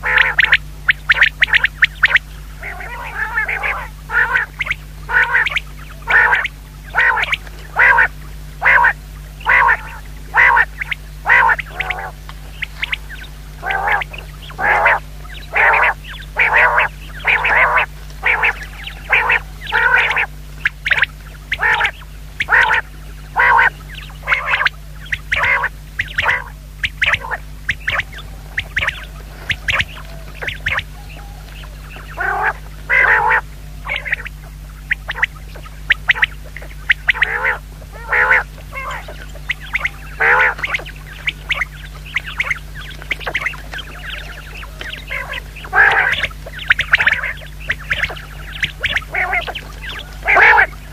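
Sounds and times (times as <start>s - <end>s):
quail calling: 0.0s - 50.9s
steady low hum: 0.0s - 50.9s.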